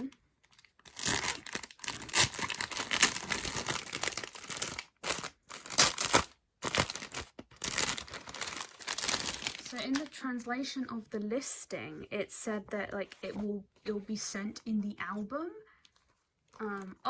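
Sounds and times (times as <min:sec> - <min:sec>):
packaging crinkling and tearing: 0:00.4 - 0:10.2.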